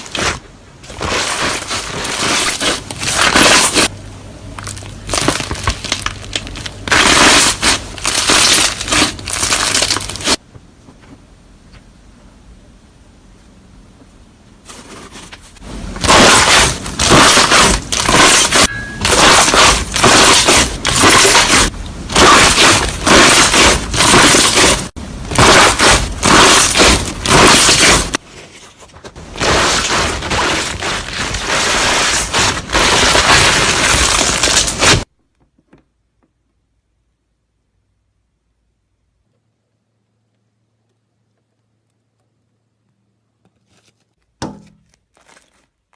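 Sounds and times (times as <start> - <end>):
crunching and crackling: 0.0 - 10.4, 14.6 - 35.2, 43.5 - 45.9.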